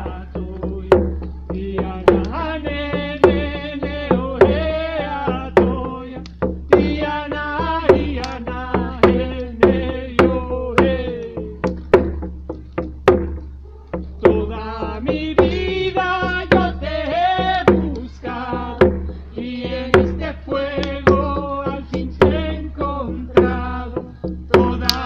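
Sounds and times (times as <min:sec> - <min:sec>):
chanted singing: 0:00.0 - 0:06.2, 0:13.6 - 0:25.0
drum beat: 0:00.0 - 0:25.0.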